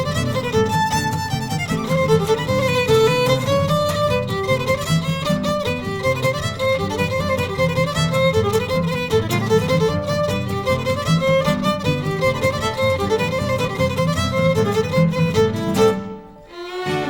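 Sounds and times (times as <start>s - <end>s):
fiddle playing quick melody: 0.0s - 17.0s.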